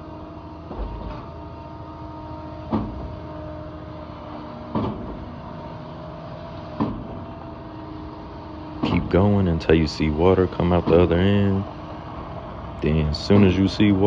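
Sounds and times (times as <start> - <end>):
pump engine and hydraulics running: 0.0 - 14.0
pump clunking: 8.7 - 14.0.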